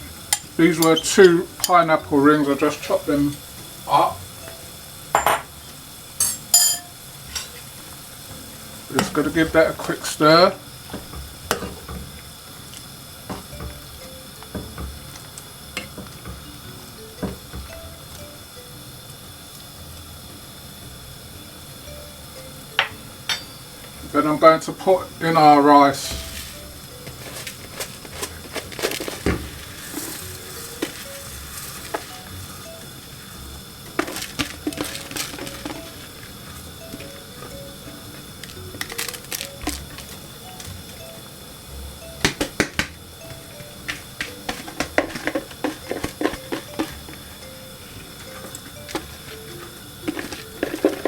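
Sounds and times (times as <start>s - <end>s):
boiling water bubbling: 0.0s - 51.0s
utensil clinking against pot: 0.3s - 2.0s, 6.2s - 7.6s, 43.8s - 47.5s, 48.3s - 51.0s
rice poured into pot: 24.2s - 33.3s, 33.9s - 36.4s.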